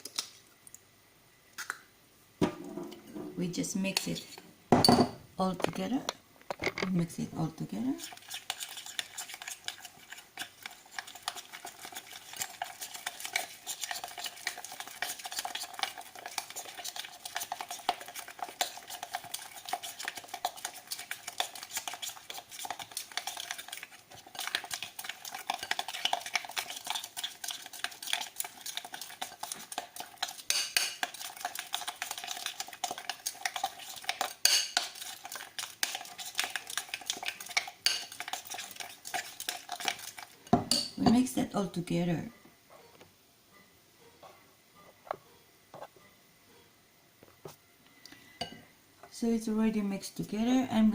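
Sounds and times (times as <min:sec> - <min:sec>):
utensil stirring batter in a bowl: 0:02.7 - 0:04.5, 0:06.8 - 0:42.1.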